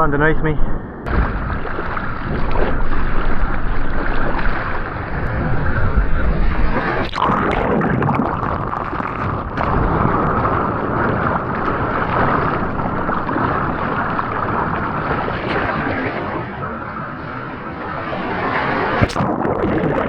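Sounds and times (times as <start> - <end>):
wind buffeting microphone: 0.0 - 20.0
ocean water rushing and splashing: 1.1 - 20.0.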